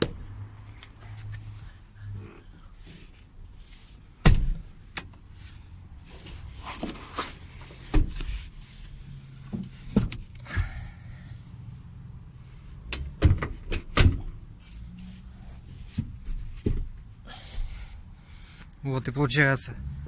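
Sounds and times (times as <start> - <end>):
thumps and knocks in car interior: 4.2 - 4.8, 7.8 - 8.3, 12.9 - 14.4, 15.7 - 17.7.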